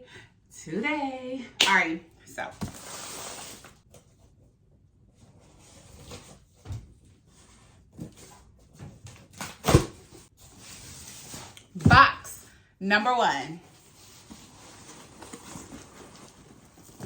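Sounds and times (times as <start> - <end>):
cardboard rustling: 2.6 - 4.2, 13.7 - 17.0.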